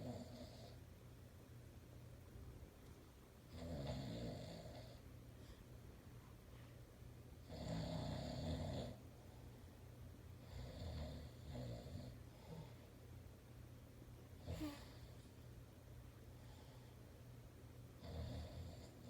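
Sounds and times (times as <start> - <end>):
man snoring: 0.0 - 0.8, 3.5 - 5.0, 7.4 - 9.0, 10.5 - 12.6, 18.0 - 19.0.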